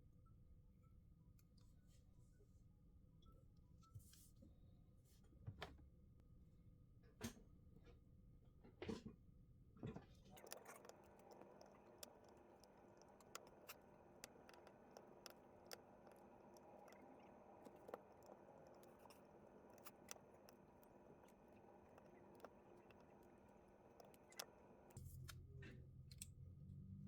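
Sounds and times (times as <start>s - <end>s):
hand tools clicking and tapping: 10.3s - 25.0s.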